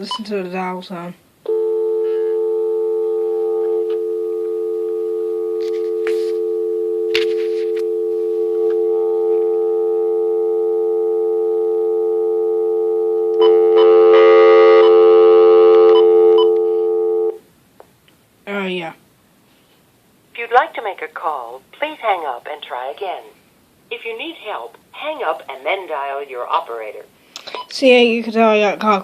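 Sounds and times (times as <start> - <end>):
phone dial tone: 1.5 - 17.4.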